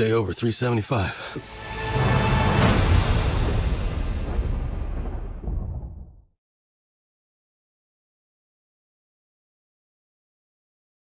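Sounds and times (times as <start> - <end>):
deep cinematic boom: 1.6 - 6.3.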